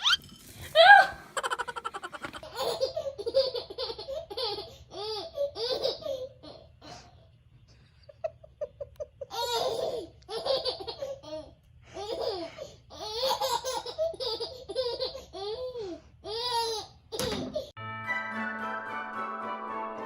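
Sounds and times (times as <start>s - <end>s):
baby laughing: 1.3s - 6.8s, 8.6s - 17.7s.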